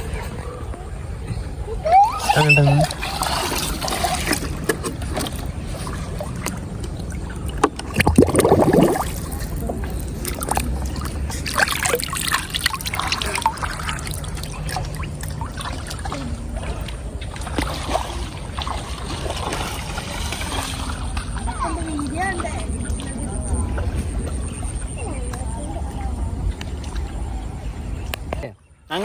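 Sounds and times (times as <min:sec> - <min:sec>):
river water trickling and splashing: 0:00.0 - 0:28.5
loud water splash: 0:02.0 - 0:23.1.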